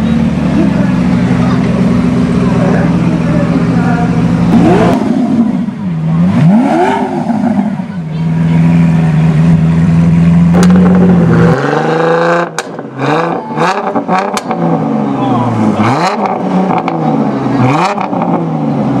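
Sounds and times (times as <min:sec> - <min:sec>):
supercar engine revving: 0:00.0 - 0:19.0
exhaust cracks: 0:09.2 - 0:18.5.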